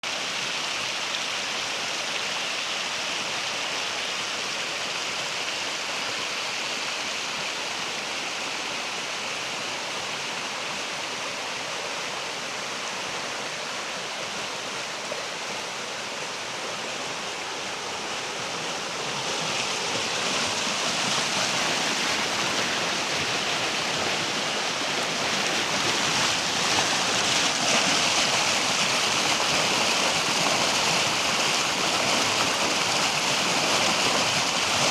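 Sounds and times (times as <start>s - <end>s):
waterfall rushing and splashing: 0.0s - 34.9s.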